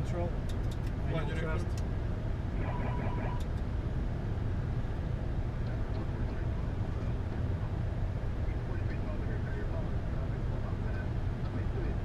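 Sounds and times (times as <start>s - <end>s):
airflow and engine rumble: 0.0s - 12.0s
tone and chirping: 2.6s - 3.4s.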